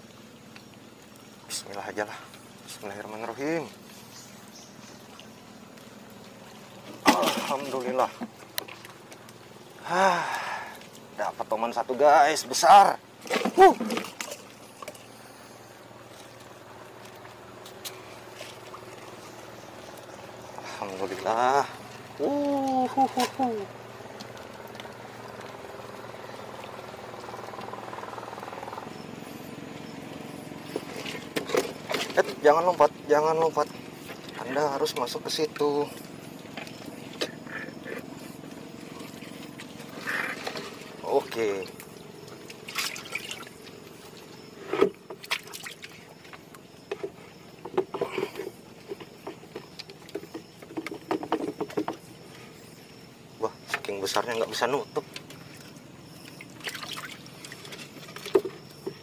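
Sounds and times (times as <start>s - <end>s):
small engine idling: 0.0s - 59.0s
knocks and thuds in a boat: 30.6s - 37.8s, 44.4s - 52.4s, 53.5s - 59.0s.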